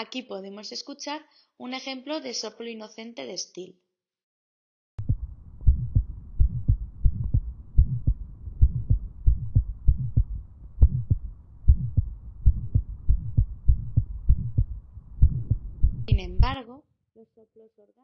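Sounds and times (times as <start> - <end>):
heartbeat lub-dub: 5.0 - 16.6
humming heart murmur: 5.0 - 16.6.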